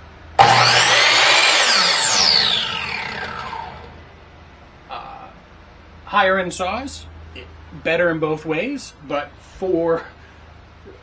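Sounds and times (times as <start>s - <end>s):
saw blade spinning down whine: 0.4s - 4.2s.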